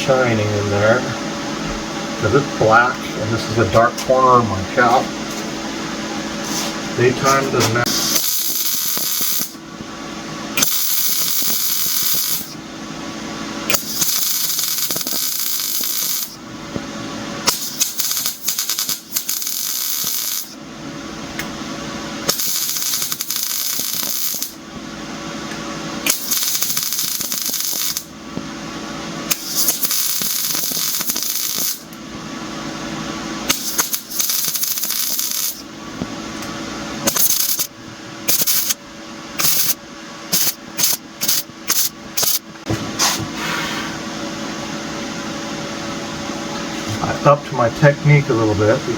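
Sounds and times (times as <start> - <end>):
welder hum: 0.0 - 48.9
arc welding crackling: 7.0 - 9.7, 10.5 - 12.6, 13.6 - 20.7, 22.2 - 24.7, 25.5 - 28.5, 29.2 - 32.0, 33.4 - 38.8, 39.4 - 42.6.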